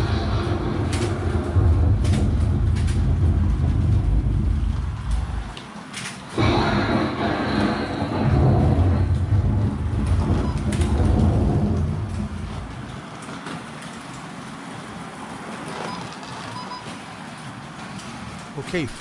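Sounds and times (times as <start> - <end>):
thunder rumble: 0.0 - 5.6, 6.4 - 13.0.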